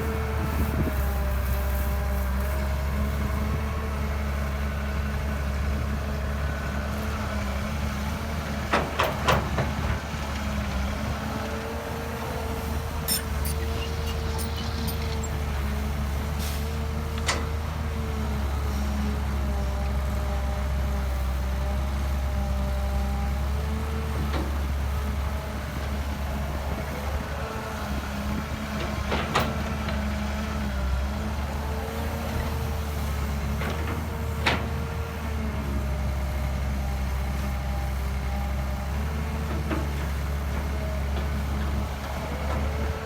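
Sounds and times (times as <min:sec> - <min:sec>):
excavator diesel engine running: 0:00.0 - 0:43.0
hydraulic whine: 0:12.4 - 0:15.8.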